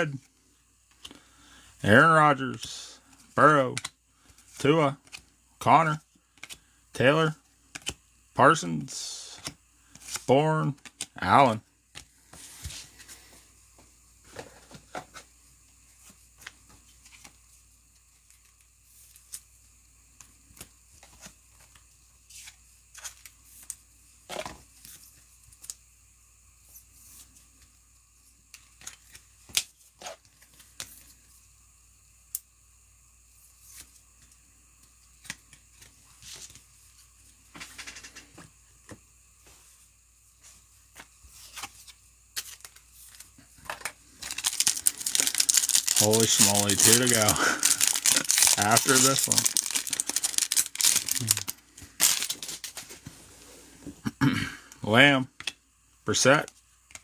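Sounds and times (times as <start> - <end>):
card packs being torn open: 44.2 - 52.8
wrapper crinkling: 44.2 - 52.9.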